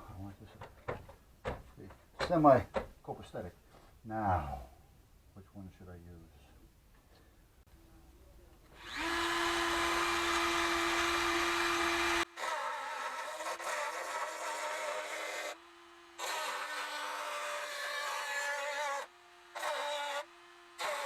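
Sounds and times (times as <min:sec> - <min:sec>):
electric power tool whining: 0:08.7 - 0:21.0.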